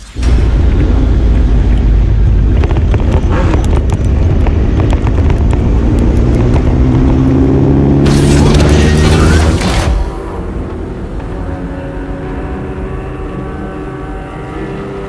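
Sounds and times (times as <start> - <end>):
motorcycle engines running: 2.4 - 9.4.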